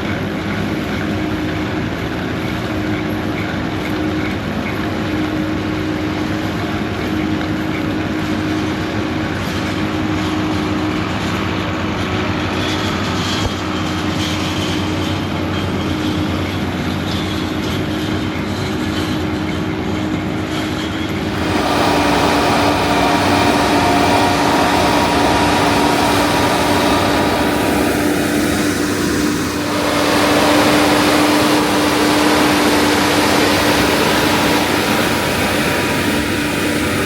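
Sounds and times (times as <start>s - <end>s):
diesel machinery engine drone: 0.0s - 37.0s.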